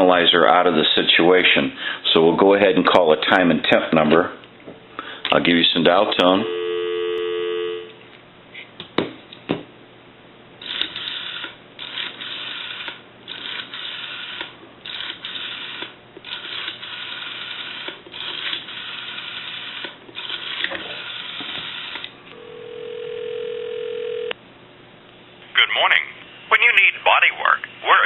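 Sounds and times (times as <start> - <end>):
telephone ringback tone: 6.4 - 8.0, 22.4 - 24.4
rotary phone dial whirring: 10.6 - 24.3.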